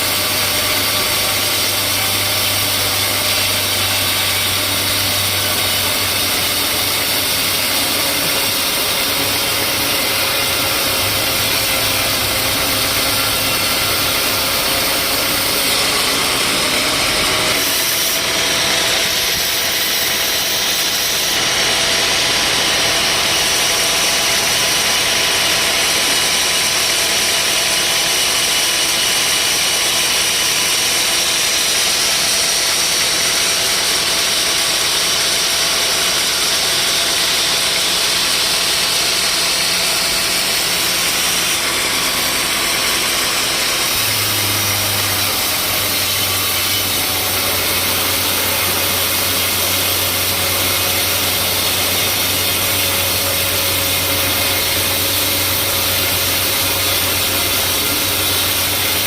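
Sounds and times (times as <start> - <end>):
sawmill machinery drone: 0.0 - 59.0
steady machine whine: 0.0 - 59.0.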